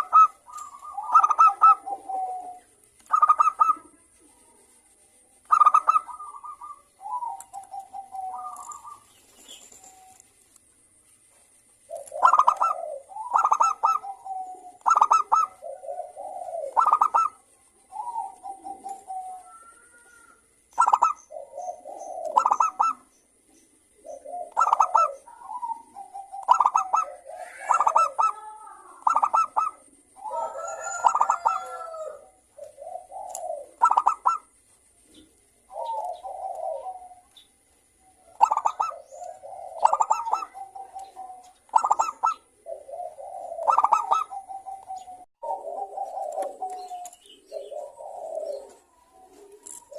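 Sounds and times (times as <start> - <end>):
dove cooing: 0.0 - 10.4, 11.8 - 49.9.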